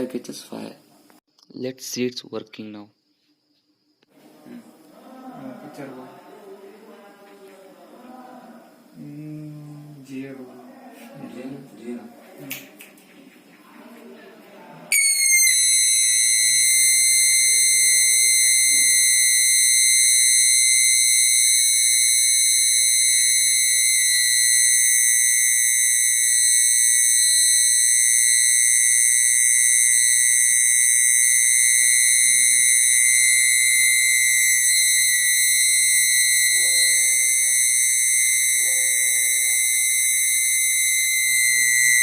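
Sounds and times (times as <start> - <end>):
high-pitched alarm buzzer tone: 14.9 - 42.0.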